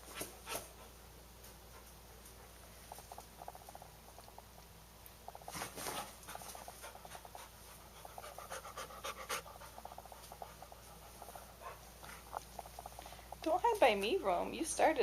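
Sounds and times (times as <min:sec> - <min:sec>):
dog panting: 0:05.5 - 0:13.0.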